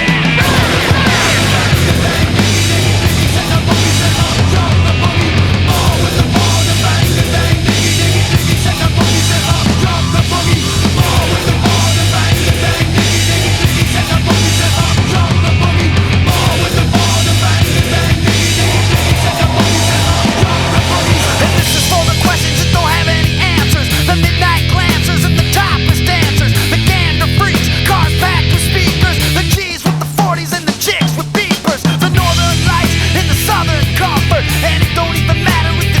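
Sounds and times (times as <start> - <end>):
hard rock music: 0.0 - 36.0.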